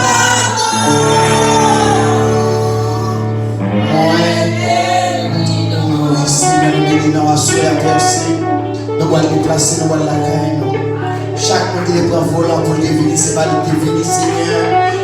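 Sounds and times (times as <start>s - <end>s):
gospel choir singing: 0.0s - 7.9s.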